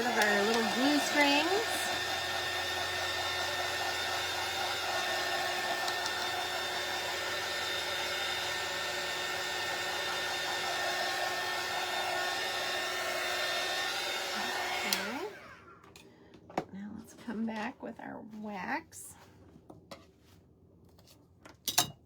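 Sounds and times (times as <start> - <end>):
hot-air blower whirring: 0.0 - 16.7.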